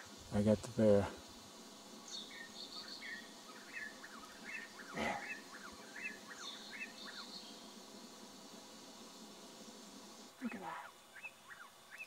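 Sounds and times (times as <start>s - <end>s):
small bird chirping: 2.0s - 7.8s, 10.3s - 12.0s.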